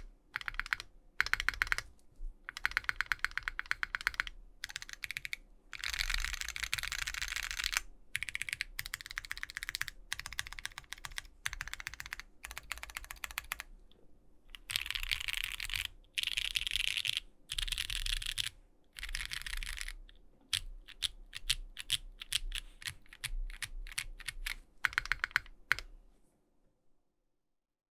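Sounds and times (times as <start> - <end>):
typing on mechanical keyboard: 0.0 - 1.9, 2.5 - 13.7, 14.5 - 25.9.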